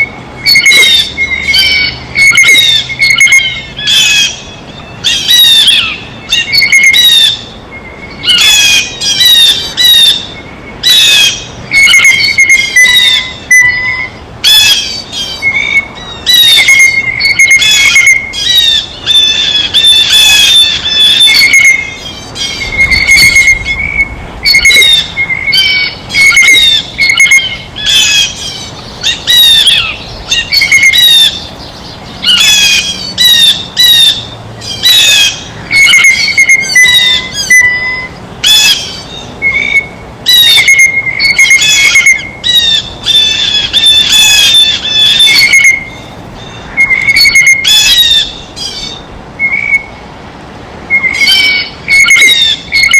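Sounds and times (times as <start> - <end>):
blue jays squawking: 8.3 - 49.0.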